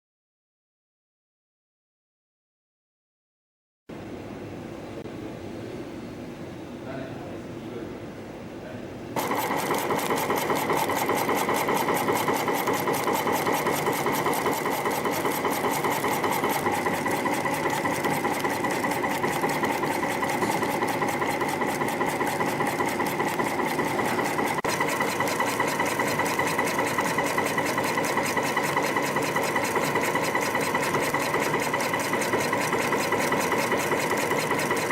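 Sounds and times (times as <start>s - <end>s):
machine clattering: 9.2s - 34.9s.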